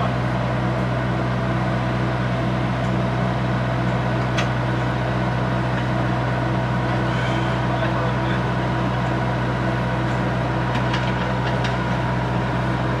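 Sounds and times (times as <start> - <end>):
engine humming steadily: 0.0 - 13.0.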